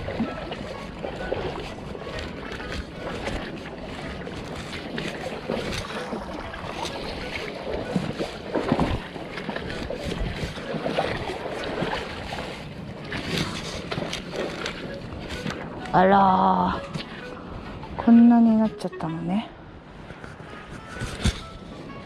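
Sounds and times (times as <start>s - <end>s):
wind buffeting microphone: 0.0s - 18.9s
water sloshing and splashing: 0.0s - 19.2s
knocks and scrapes: 20.0s - 21.8s.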